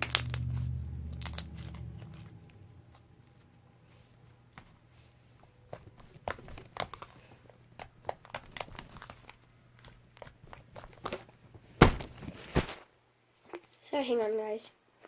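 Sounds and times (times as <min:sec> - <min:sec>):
slime squishing with clicks and pops: 0:00.0 - 0:02.4, 0:07.7 - 0:11.2.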